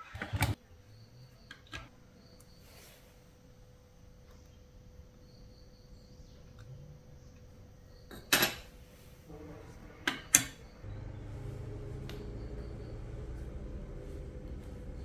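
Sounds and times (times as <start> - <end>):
low steady hum: 9.3 - 15.0.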